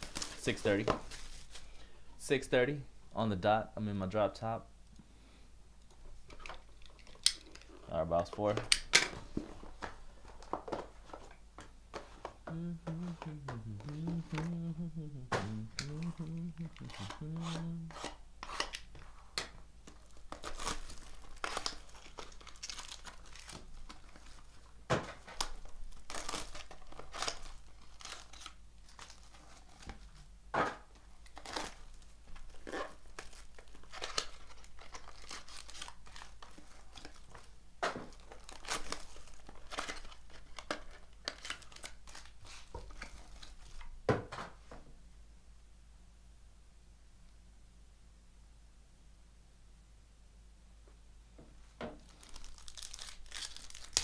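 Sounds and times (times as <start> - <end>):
wrapping and cardboard tearing: 0.0 - 1.7, 13.0 - 18.8, 19.9 - 30.0, 31.2 - 43.8, 52.0 - 54.0
crinkling and rustling: 0.0 - 1.8, 5.8 - 14.6, 15.2 - 44.9, 51.4 - 54.0.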